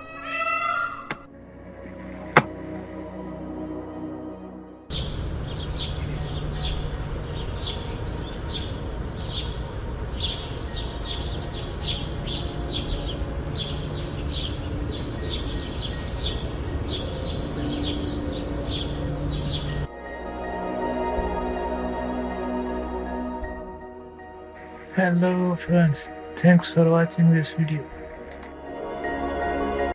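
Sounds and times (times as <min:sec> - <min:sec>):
bird chirping: 0:04.9 - 0:19.9.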